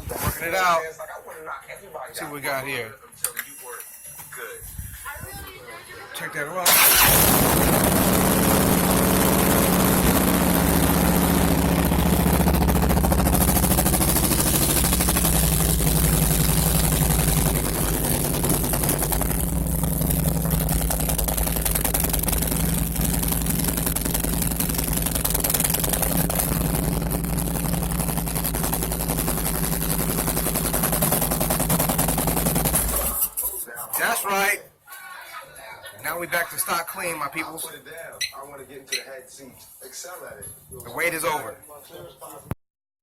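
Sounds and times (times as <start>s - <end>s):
motorcycle engine idling: 7.7s - 33.1s.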